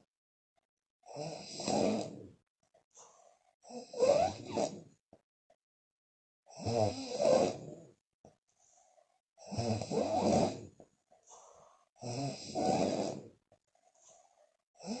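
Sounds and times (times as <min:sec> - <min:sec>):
woman snoring loudly: 0:01.1 - 0:02.3, 0:03.7 - 0:04.9, 0:06.5 - 0:07.9, 0:09.4 - 0:10.8, 0:12.0 - 0:13.4, 0:14.8 - 0:15.0.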